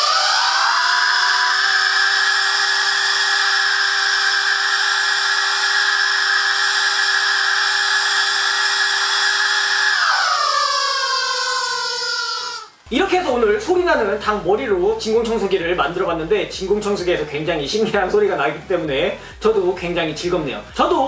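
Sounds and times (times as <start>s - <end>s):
rubber chicken toys squawking: 0.0s - 12.8s
vacuum cleaner motor: 1.6s - 10.7s.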